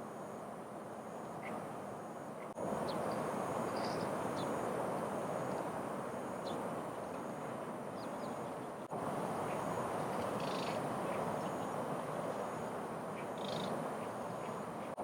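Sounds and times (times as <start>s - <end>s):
high bird chirps: 2.8s - 4.5s.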